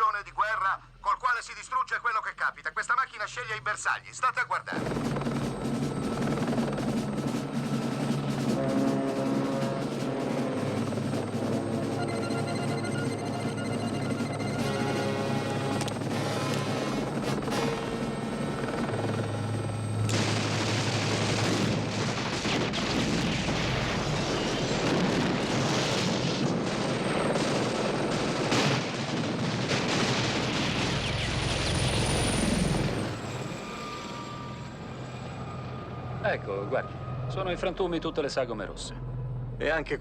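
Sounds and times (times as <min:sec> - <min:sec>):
helicopter running overhead: 0:04.7 - 0:40.0
rapid rotary cannon fire: 0:04.8 - 0:12.3, 0:20.0 - 0:31.7.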